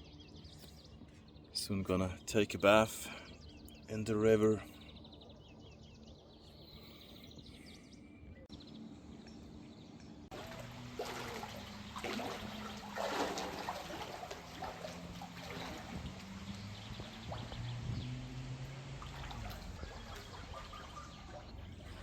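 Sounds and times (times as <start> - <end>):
bird calls: 0.0 - 22.0
faint low hum: 4.6 - 22.0
water trickling and splashing: 10.2 - 22.0.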